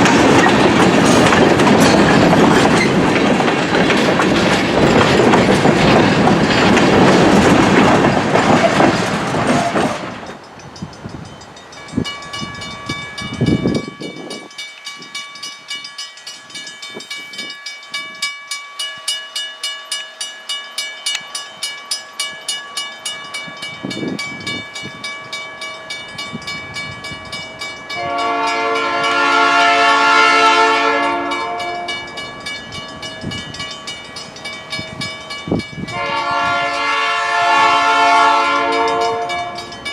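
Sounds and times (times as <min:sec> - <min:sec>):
wheels clicking over rail joints: 0:00.0 - 0:18.6
train rumble: 0:00.0 - 0:19.1, 0:19.9 - 0:39.9
train air horn blast: 0:28.0 - 0:31.9, 0:35.9 - 0:39.6.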